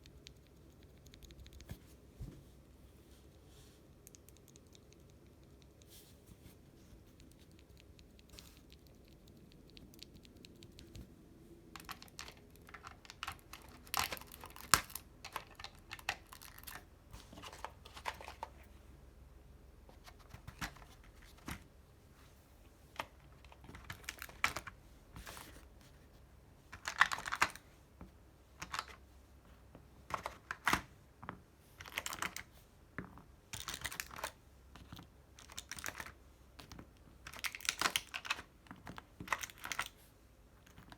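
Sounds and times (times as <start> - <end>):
mechanical keyboard typing: 0.0 - 1.7, 11.8 - 16.8.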